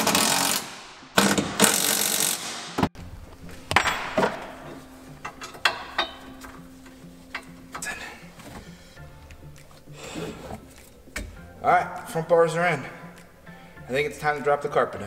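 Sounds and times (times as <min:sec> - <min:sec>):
ratchet wrench ratcheting: 0:00.0 - 0:02.6
metal clicks and knocks: 0:03.7 - 0:07.9.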